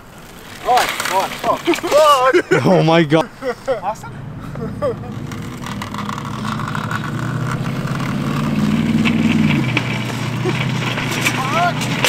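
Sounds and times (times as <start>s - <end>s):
vehicle engine accelerating: 3.8s - 12.0s.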